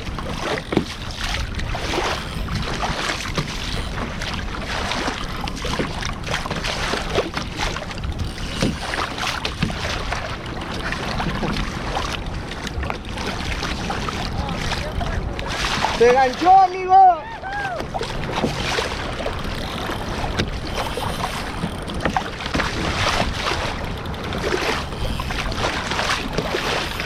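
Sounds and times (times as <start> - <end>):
water splashing against a hull: 0.0 - 27.0
wind buffeting microphone: 0.0 - 27.0.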